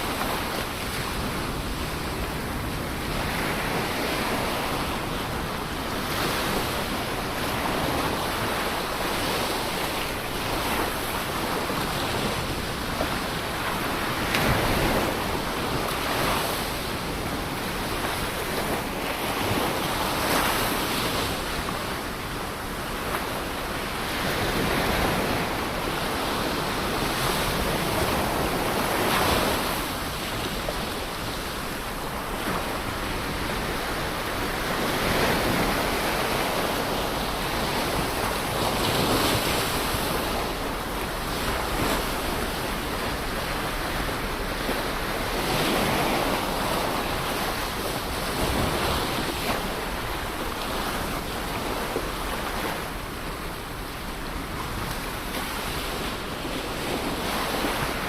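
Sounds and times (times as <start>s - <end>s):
ocean waves breaking: 0.0s - 58.0s
wind noise on microphone: 0.0s - 58.0s.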